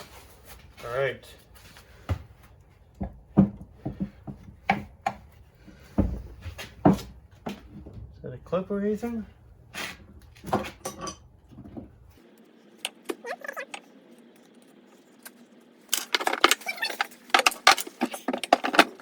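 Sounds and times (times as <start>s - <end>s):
metal tools clinking: 10.8s - 11.3s, 15.9s - 19.0s.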